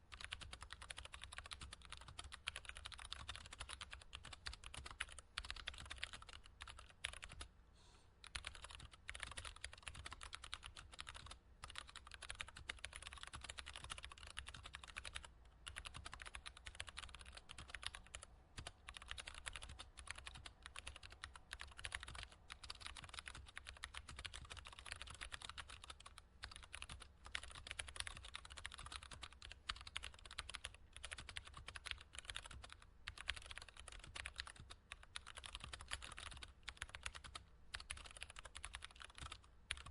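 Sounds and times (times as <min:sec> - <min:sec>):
typing on computer keyboard: 0:00.1 - 0:07.5, 0:08.2 - 0:39.9.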